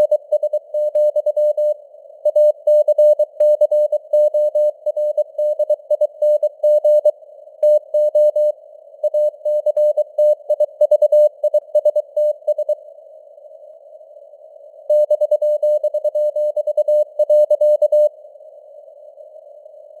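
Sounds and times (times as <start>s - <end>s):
morse code tone: 9.1s - 12.8s.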